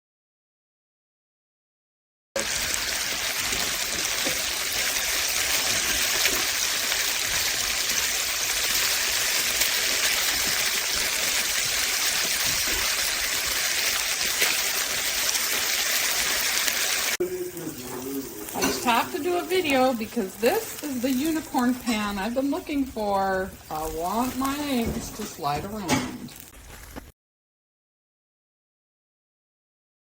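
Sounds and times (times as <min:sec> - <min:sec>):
water running from a tap: 0:02.4 - 0:22.2.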